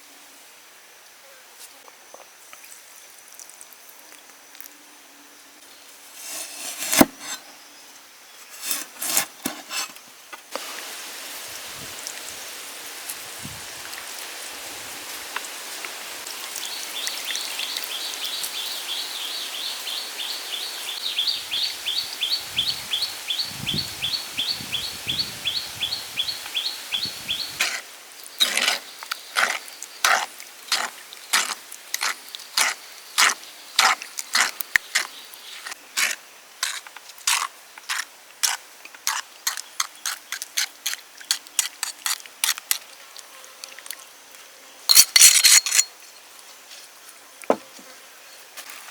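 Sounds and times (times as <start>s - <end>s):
outdoor hiss: 5.7s - 33.8s
utensils clinking on dishes: 44.9s - 45.9s.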